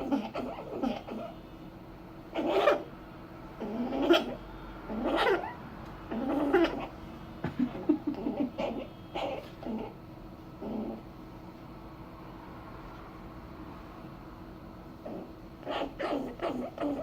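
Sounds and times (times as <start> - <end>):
pet animal calling: 0.0 - 1.4, 2.3 - 2.9, 3.6 - 7.0, 8.0 - 10.0, 15.0 - 17.0.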